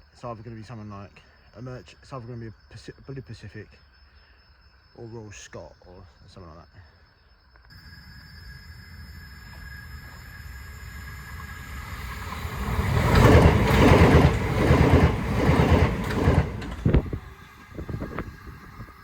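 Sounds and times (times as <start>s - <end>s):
vehicle passing rumble: 7.8s - 19.0s.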